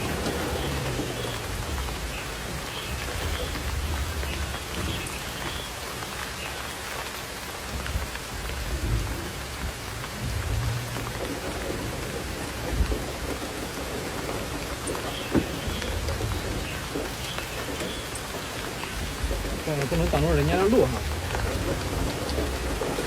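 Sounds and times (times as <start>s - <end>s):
torrential rain pouring: 0.0s - 23.0s
low thumps: 7.7s - 23.0s.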